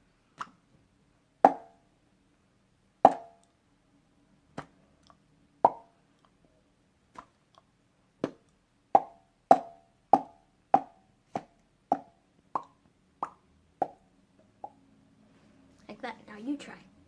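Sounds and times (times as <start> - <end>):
finger-flick mouth pops: 12.6 - 14.0.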